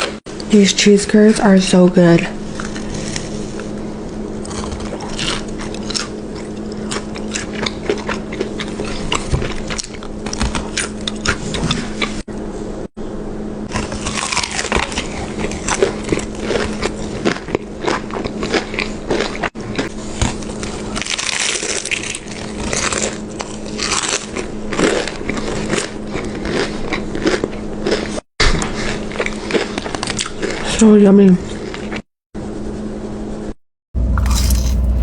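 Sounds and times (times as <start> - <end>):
chewing crunchy food: 2.5 - 12.2, 13.7 - 30.8, 34.2 - 35.0.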